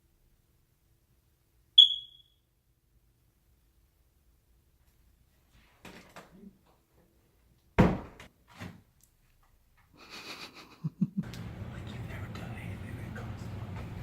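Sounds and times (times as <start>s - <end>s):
loud thump: 7.8s - 8.3s.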